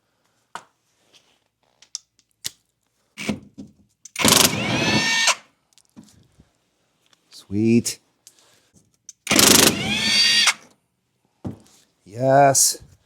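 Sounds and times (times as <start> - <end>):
power tool motor whine: 4.2 - 5.4, 9.3 - 10.6.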